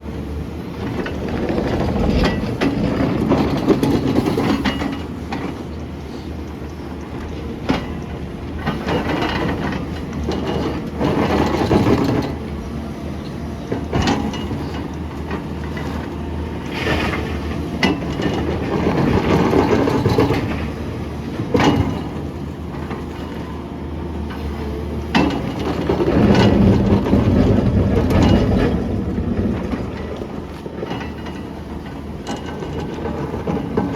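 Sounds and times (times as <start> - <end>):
excavator diesel engine: 0.0 - 33.9.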